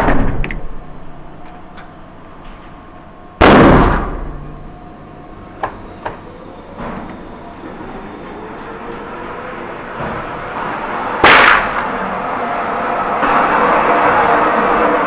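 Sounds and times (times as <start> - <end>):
rifle shot with ringing tail: 11.2 - 11.9.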